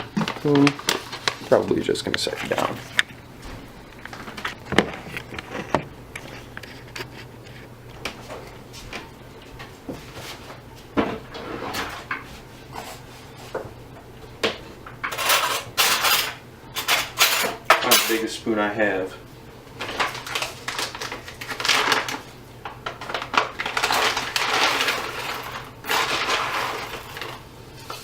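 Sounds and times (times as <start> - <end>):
steady low hum: 0.0 - 21.4
dishes and utensils clinking: 15.0 - 18.3.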